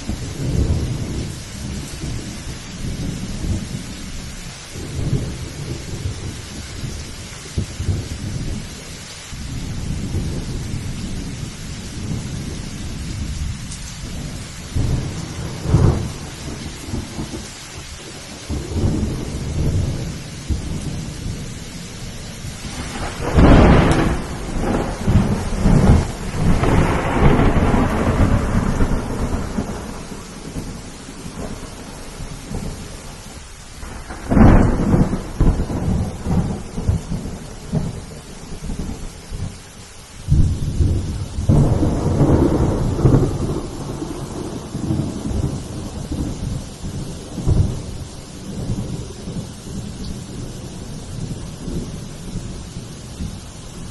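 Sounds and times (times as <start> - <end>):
rolling low thunder: 0.0 - 39.6, 40.2 - 53.9
steady rain: 0.0 - 53.9
sharp thunder cracks: 14.1 - 17.5, 22.6 - 32.8, 33.8 - 39.5, 40.3 - 50.6.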